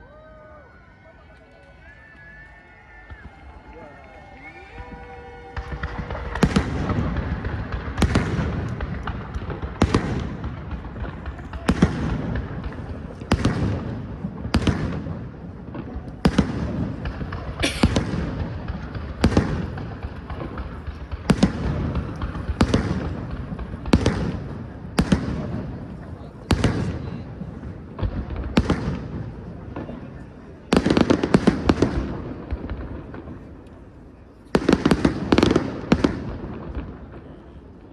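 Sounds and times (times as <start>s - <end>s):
fireworks crackling: 0.9s - 37.9s
fireworks bangs: 2.7s - 37.9s.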